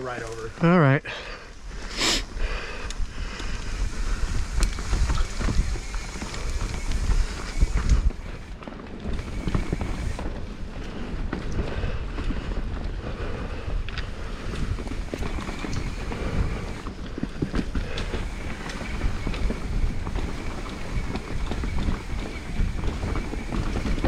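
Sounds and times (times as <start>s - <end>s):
bike rattling: 1.4s - 24.0s
wind buffeting microphone: 1.6s - 24.0s
tyres rumbling over dirt: 3.2s - 24.0s.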